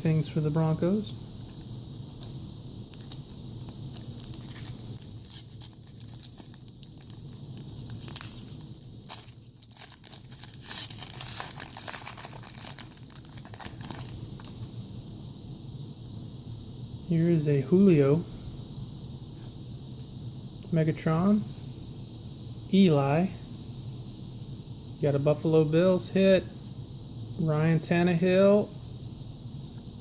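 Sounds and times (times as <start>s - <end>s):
wrapper tearing and crinkling: 4.0s - 14.6s.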